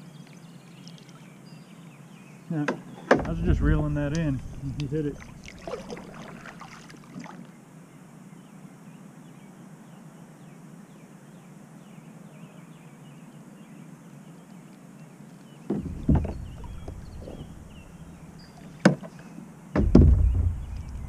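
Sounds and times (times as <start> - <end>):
outdoor background hiss: 0.0 - 21.0
small birds chirping: 9.3 - 21.0.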